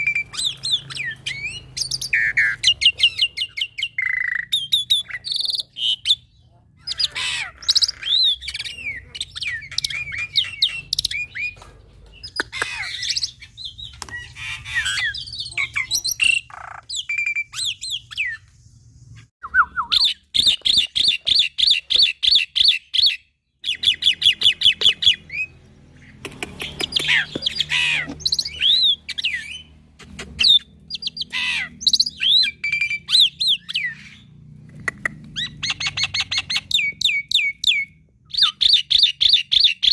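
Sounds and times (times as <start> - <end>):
bird singing whistles and squawks: 0.0 - 6.3, 12.2 - 18.5, 19.2 - 25.5, 26.5 - 34.3, 35.4 - 39.9.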